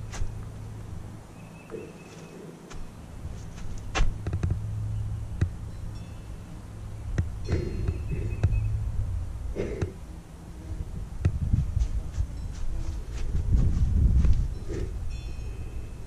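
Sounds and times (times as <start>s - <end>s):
low hum: 0.0s - 16.0s
sharp clicks and knocks: 3.9s - 4.6s.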